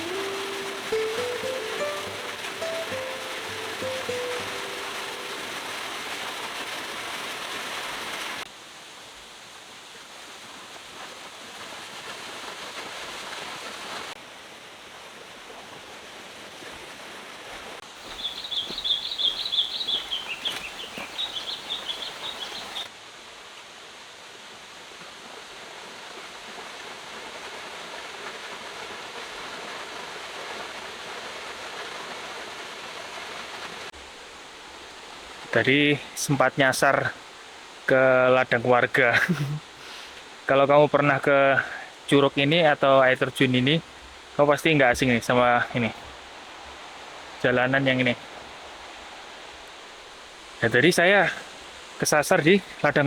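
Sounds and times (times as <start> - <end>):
stream and waterfall rushing: 0.0 - 53.0
small bird chirping: 18.0 - 22.9.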